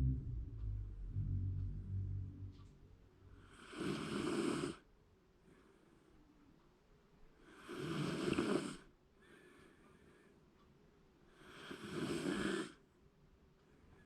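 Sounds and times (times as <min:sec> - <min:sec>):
dog snoring: 0:03.6 - 0:04.8, 0:07.6 - 0:08.8, 0:11.4 - 0:12.8
faint breath: 0:08.7 - 0:10.6.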